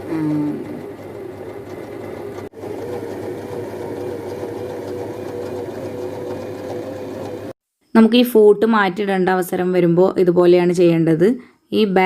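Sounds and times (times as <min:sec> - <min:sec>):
mechanical hum: 0:00.0 - 0:07.6.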